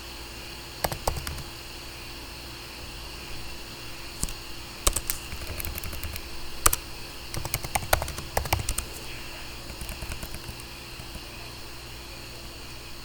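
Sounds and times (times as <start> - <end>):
faint hum: 0.0 - 13.0
keyboard key clicks: 0.8 - 1.5, 4.2 - 11.4.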